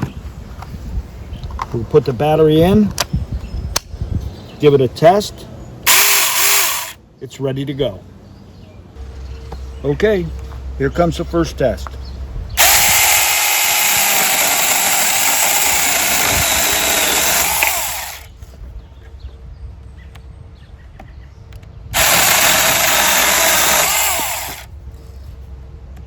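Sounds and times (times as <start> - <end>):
chain cutting through wood: 5.9 - 7.0, 12.6 - 18.3, 22.0 - 24.7
mini chainsaw running: 5.9 - 7.0, 12.6 - 18.3, 22.0 - 24.7.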